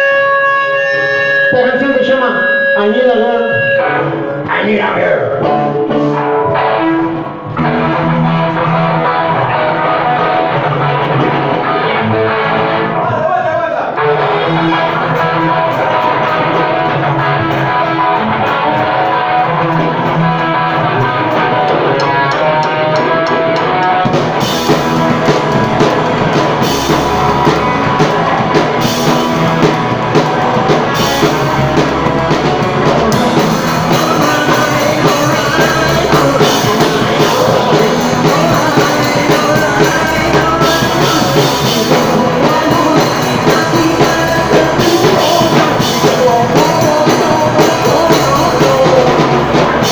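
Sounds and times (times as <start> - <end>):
bass guitar: 0.0 - 49.9
electric guitar: 0.0 - 49.9
drum kit with cymbals: 14.2 - 49.9.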